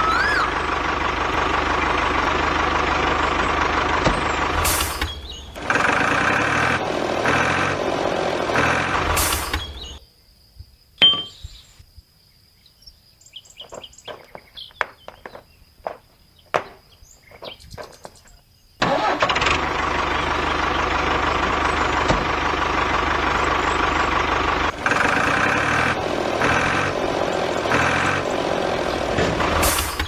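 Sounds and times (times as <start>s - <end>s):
vehicle engine running loudly: 0.0s - 10.0s, 18.8s - 30.0s.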